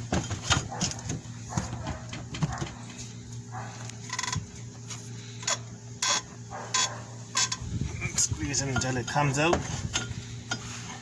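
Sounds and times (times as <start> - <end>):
metallic clicks and scrapes: 5.4 - 7.7.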